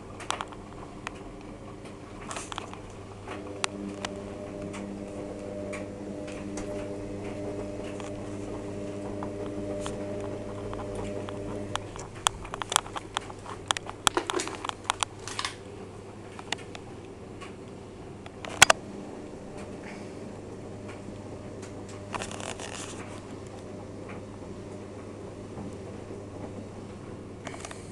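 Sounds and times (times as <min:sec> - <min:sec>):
washing machine drum motor hum: 0:00.0 - 0:27.9
sharp clicks and taps: 0:08.9 - 0:15.5.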